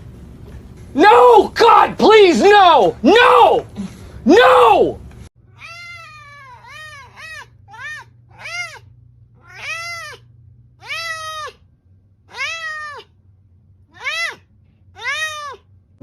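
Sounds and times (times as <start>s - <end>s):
cat meowing: 5.5s - 11.6s, 12.3s - 13.1s, 13.9s - 15.7s.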